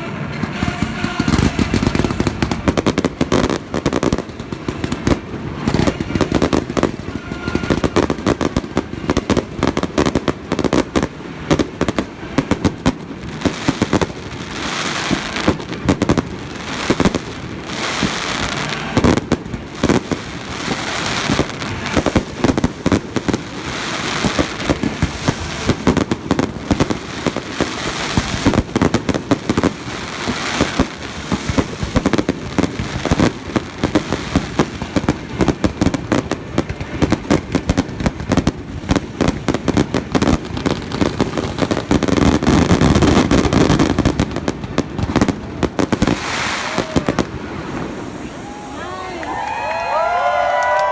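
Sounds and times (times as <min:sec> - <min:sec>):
fireworks crackling: 0:00.0 - 0:50.9
fireworks exploding: 0:00.0 - 0:50.9.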